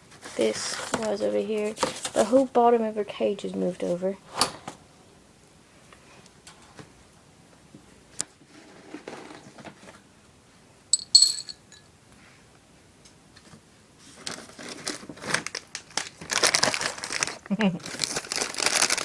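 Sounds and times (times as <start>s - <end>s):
rustling in rabbit cage: 0.0s - 2.6s, 8.4s - 10.0s, 13.4s - 19.0s
crinkling rustles: 0.1s - 2.6s, 14.0s - 19.0s
metal clinks: 10.9s - 11.9s.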